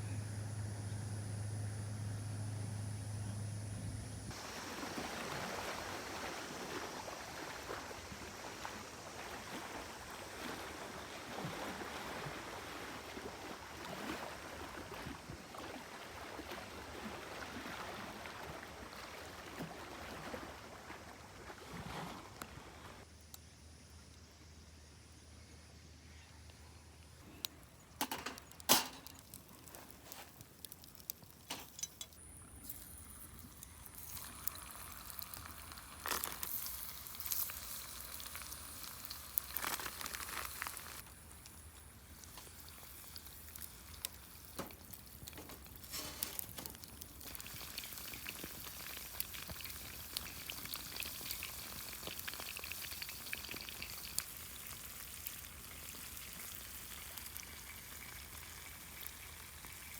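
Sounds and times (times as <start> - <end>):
oil popping and crackling: 27.4 - 59.9
chicken deep-frying in hot oil: 27.6 - 59.9.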